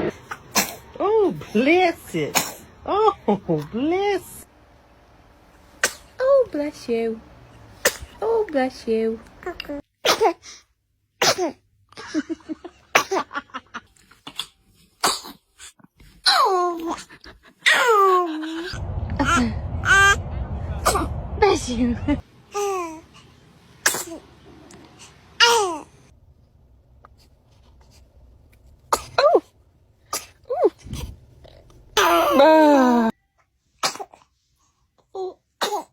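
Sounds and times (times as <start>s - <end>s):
baby sneezing: 0.0s - 0.9s, 2.3s - 2.7s, 5.8s - 6.1s, 7.8s - 8.2s, 10.0s - 10.6s, 11.2s - 11.6s, 14.2s - 15.4s, 23.8s - 24.2s, 25.4s - 25.9s, 28.9s - 29.5s, 30.1s - 31.1s, 33.8s - 34.2s, 35.6s - 35.9s
burst of voice: 18.7s - 22.2s.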